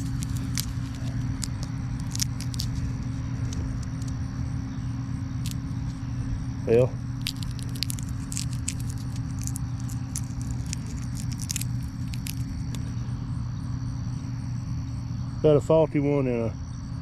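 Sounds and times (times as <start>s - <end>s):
dry pods crackling: 0.0s - 13.1s
low machine engine drone: 0.0s - 17.0s.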